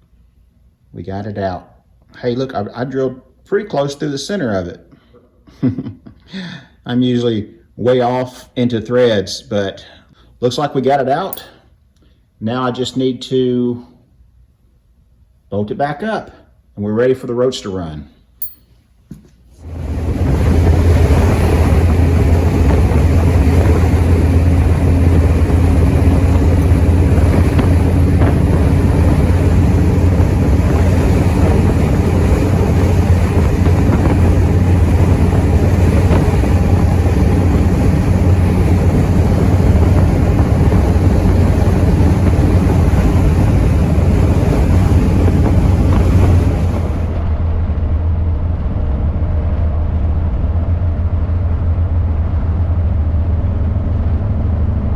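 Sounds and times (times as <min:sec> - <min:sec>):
wind on microphone: 0:19.6 - 0:50.3
car engine rumble: 0:19.6 - 0:54.9.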